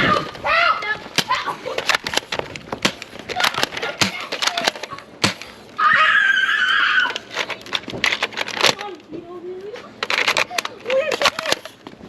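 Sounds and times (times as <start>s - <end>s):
shrill scream: 5.8s - 7.3s.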